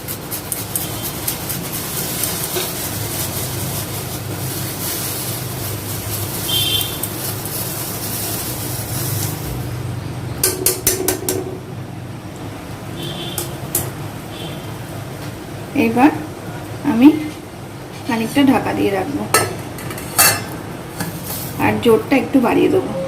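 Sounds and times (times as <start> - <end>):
water boiling in a pot: 0.0 - 22.7
utensil knocking against pot: 10.4 - 11.6.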